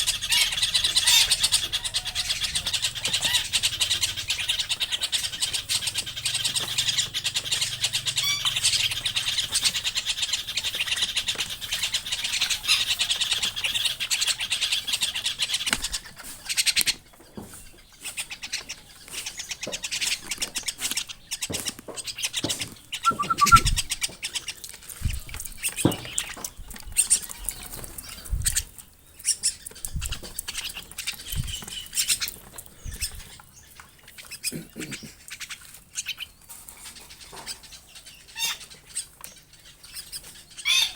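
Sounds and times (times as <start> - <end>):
short bird calls: 22.9 - 23.9
harsh rapidly pulsing bird call: 23.0 - 23.9.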